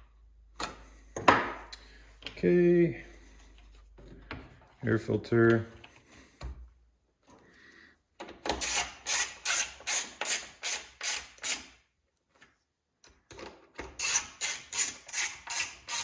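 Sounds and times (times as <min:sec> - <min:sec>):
ratchet wrench clicking: 0:14.0 - 0:16.0.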